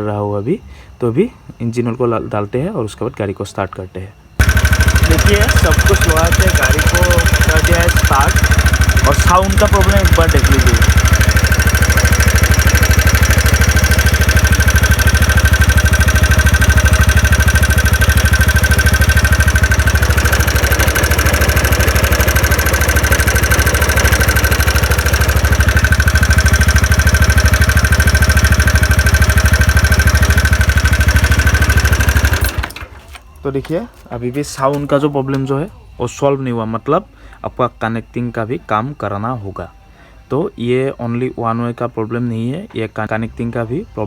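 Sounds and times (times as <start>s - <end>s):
engine knocking: 4.4s - 32.8s
scooter engine idling: 4.4s - 33.1s.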